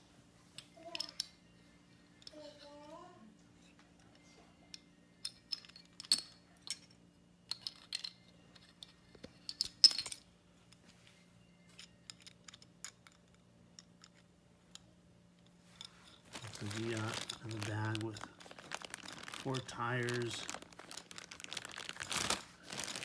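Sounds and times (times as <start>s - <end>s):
toy parts clicking and clinking: 0.6s - 1.4s, 4.7s - 10.3s, 11.7s - 14.9s, 15.8s - 23.0s.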